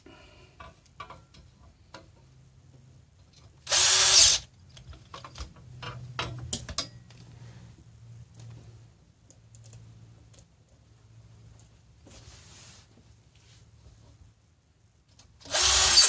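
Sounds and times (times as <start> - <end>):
power drill driving a bolt: 3.7 - 4.5, 15.5 - 16.0.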